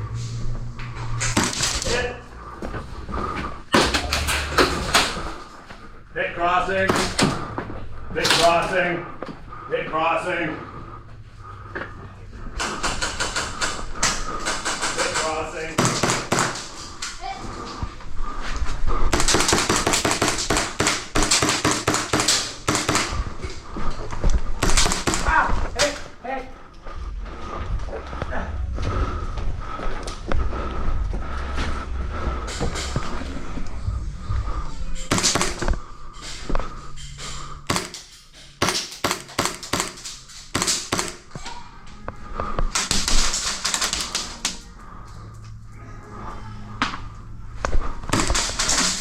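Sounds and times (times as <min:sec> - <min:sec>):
airsoft guns firing: 0:14.4 - 0:16.7, 0:19.1 - 0:23.3, 0:24.6 - 0:26.0, 0:35.1 - 0:35.7, 0:37.7 - 0:38.0, 0:38.6 - 0:41.3, 0:42.7 - 0:44.4, 0:48.1 - 0:49.0
airsoft gun automatic bursts: 0:19.2 - 0:23.2, 0:38.6 - 0:41.2.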